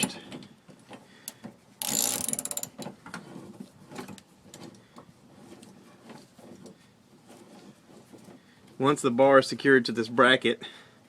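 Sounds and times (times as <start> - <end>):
ratchet wrench clicking: 1.8 - 2.8.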